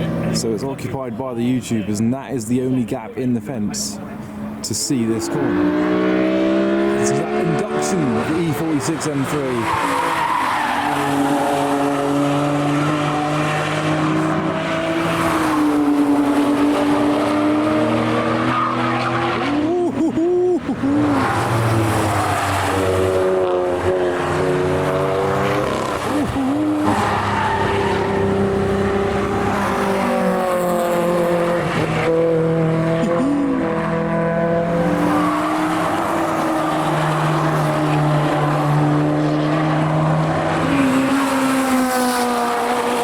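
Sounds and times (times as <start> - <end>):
car engines revving: 0.0 - 43.0
tyres squealing: 8.5 - 15.9, 25.4 - 28.4.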